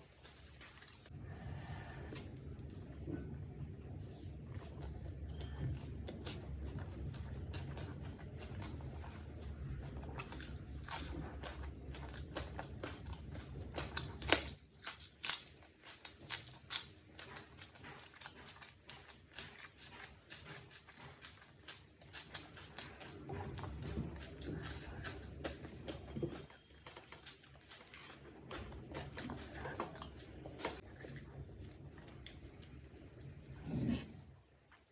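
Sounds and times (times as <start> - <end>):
wet chewing mouth sounds: 0.0 - 1.2, 2.0 - 34.9.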